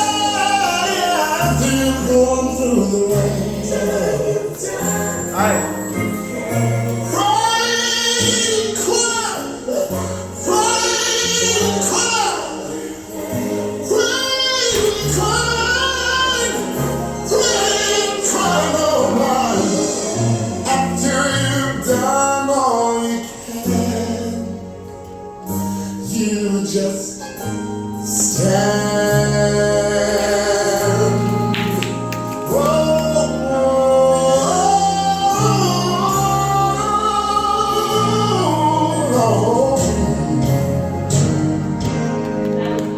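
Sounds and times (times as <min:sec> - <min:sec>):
held bass notes: 0:00.0 - 0:22.9, 0:27.6 - 0:42.9
gospel singing: 0:00.0 - 0:42.9.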